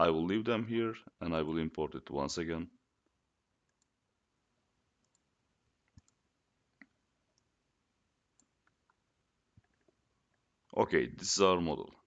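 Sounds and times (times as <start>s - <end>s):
computer mouse clicks: 3.7s - 4.0s, 5.0s - 7.5s, 8.3s - 9.0s.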